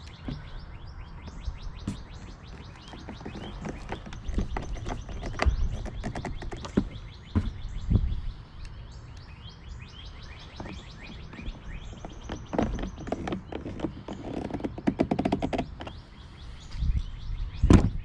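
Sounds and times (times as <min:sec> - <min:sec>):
small birds chirping: 0:00.0 - 0:18.0
clicks and knocks on plastic: 0:01.8 - 0:07.6, 0:10.6 - 0:16.0.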